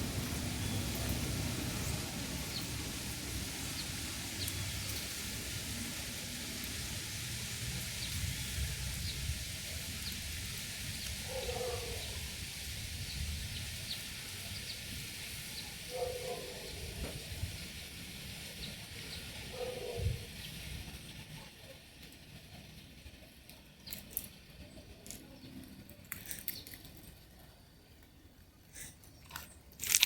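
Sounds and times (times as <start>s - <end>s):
wind rumble on microphone: 7.5s - 15.5s, 16.8s - 18.0s, 19.4s - 21.2s.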